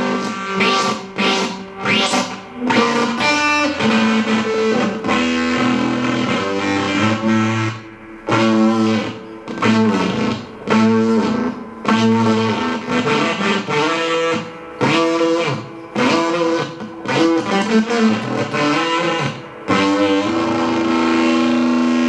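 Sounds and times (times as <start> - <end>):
fuzz-distorted electric guitar: 0.0 - 22.0.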